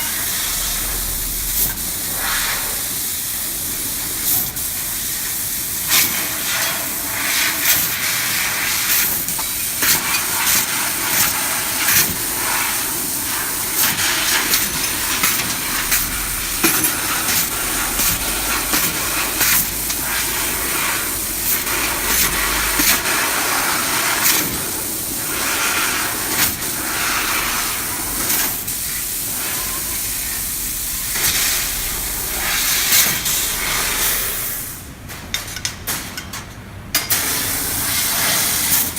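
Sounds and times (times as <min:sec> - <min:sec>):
gas hissing from cutting head: 0:12.2 - 0:34.8.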